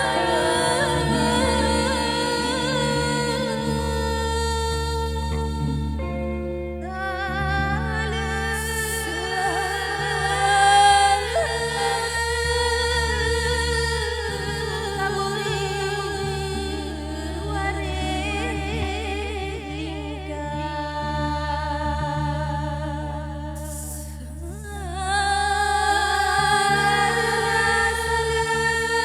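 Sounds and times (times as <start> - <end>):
voices singing: 0.0 - 6.2, 25.1 - 29.0
low drone: 0.0 - 22.4.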